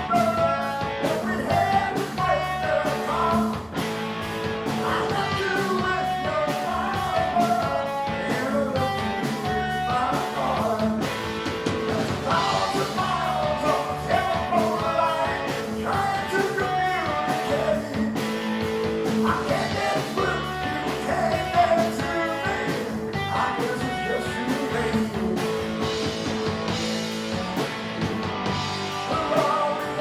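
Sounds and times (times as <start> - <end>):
bending lead guitar melody: 0.0 - 30.0
live rock band playing: 0.0 - 30.0.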